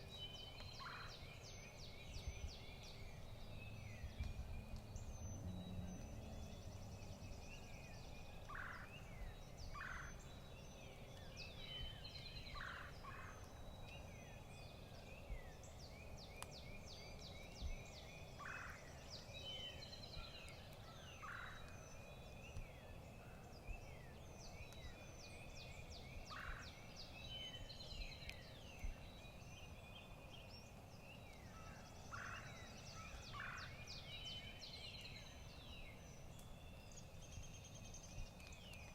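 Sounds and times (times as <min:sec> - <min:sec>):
songbirds chirping: 0:00.0 - 0:38.9.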